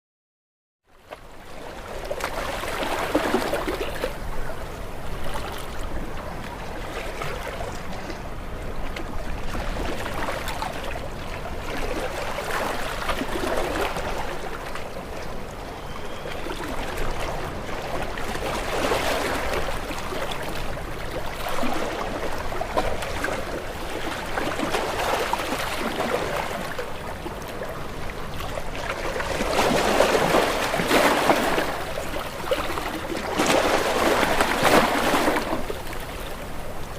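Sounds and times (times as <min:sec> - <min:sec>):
waves breaking against rocks: 0:16.2 - 0:36.8.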